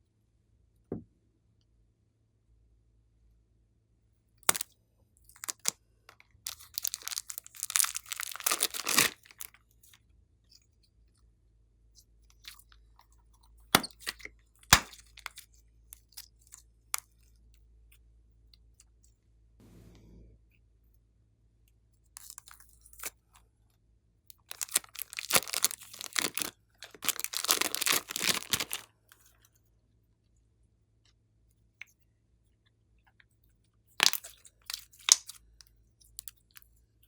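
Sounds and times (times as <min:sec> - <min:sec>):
slime clicking and popping: 0:06.5 - 0:09.4, 0:14.7 - 0:15.0, 0:24.5 - 0:28.8
slime crackling: 0:06.5 - 0:09.5, 0:24.5 - 0:28.9.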